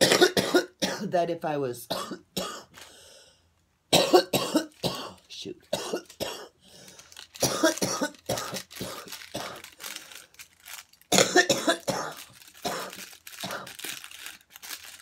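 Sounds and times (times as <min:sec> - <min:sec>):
woman coughing: 0:00.0 - 0:01.2, 0:01.9 - 0:02.7, 0:03.9 - 0:06.5, 0:07.4 - 0:09.7, 0:11.1 - 0:13.8.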